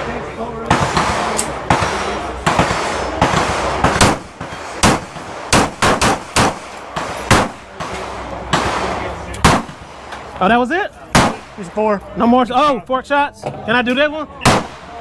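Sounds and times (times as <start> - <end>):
pistol shots with echo: 0.6 - 10.3, 11.1 - 11.6, 14.4 - 15.0.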